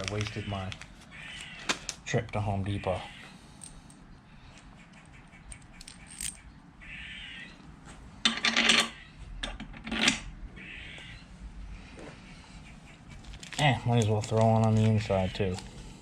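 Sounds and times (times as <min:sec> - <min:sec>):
metal bolts and nuts clinking: 0:05.5 - 0:06.4, 0:08.2 - 0:10.2.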